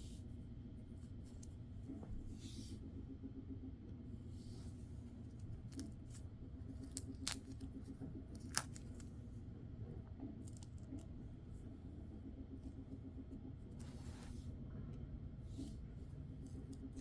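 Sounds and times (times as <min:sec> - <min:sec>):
film peeling off skin: 0:06.8 - 0:09.1.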